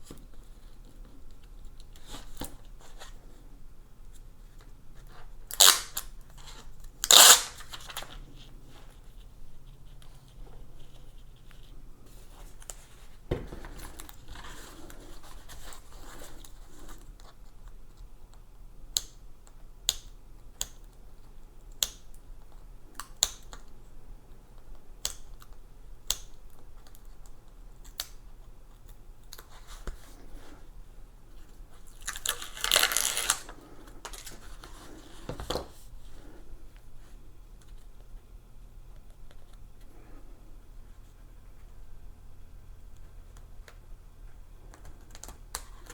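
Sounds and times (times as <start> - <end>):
velcro tearing rustle: 5.5 - 8.2, 31.8 - 35.1.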